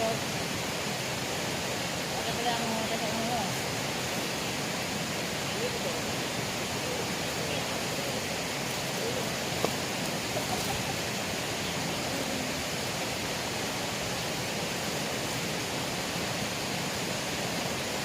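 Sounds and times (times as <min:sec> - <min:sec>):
river water rushing: 0:00.0 - 0:18.0.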